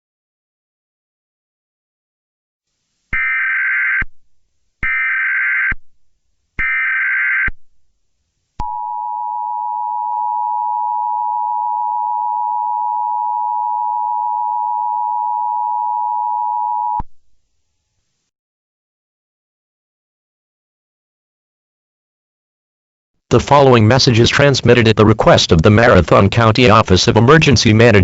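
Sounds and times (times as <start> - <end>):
two-tone alert tone: 8.6 - 17.0.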